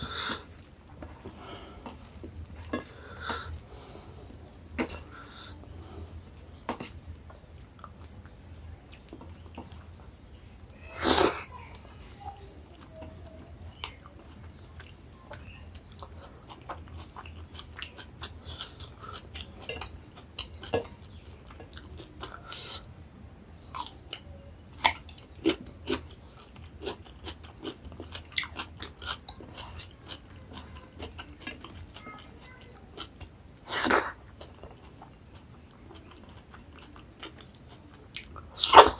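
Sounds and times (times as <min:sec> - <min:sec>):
wet chewing and lip-smacking: 0:24.8 - 0:38.9.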